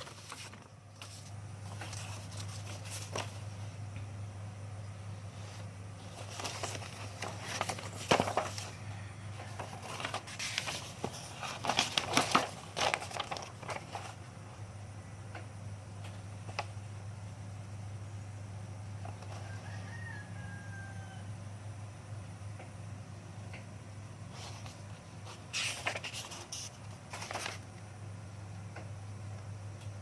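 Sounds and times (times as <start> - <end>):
crinkling handling noises: 0.0 - 4.2, 5.1 - 14.6, 24.2 - 27.9
steady low hum: 0.0 - 30.0.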